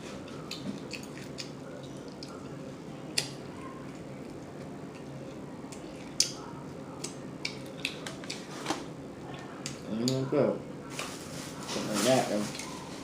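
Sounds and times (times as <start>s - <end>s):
chewing with wet mouth smacks: 0.1s - 8.5s.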